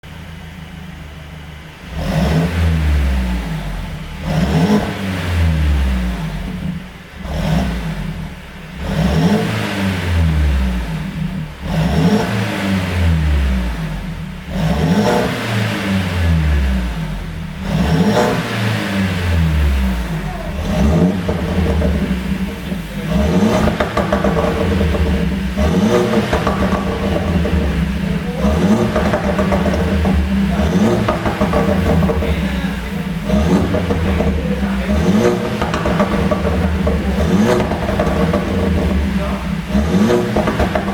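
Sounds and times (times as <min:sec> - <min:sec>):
car engine revving: 0:00.0 - 0:40.9
exhaust pops and crackles: 0:10.5 - 0:40.9.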